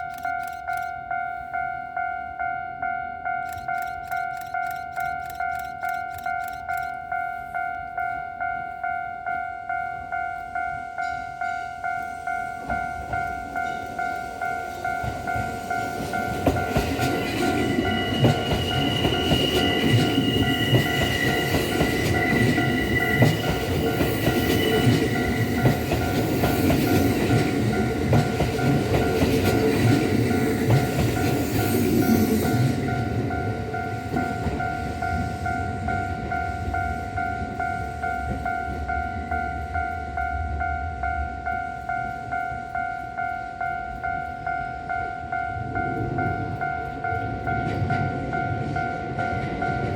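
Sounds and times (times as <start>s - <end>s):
level crossing bell ringing: 0.0s - 49.9s
train high whine: 0.0s - 49.9s
train wheels clacking over rail joints: 14.8s - 32.7s.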